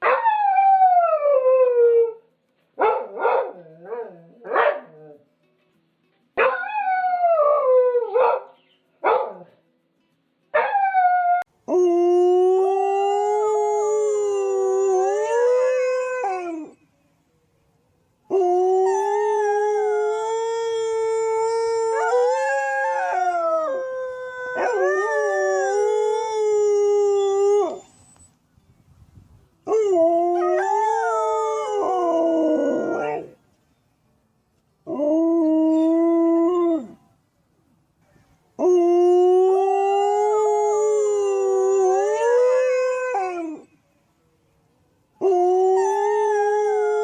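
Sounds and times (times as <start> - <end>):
dog howling: 18.3 - 28.0, 29.7 - 33.4.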